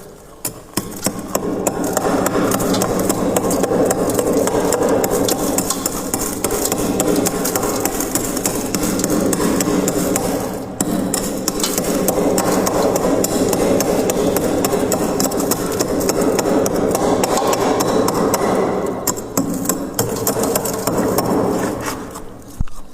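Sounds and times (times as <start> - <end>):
frost crunching: 1.7 - 10.6.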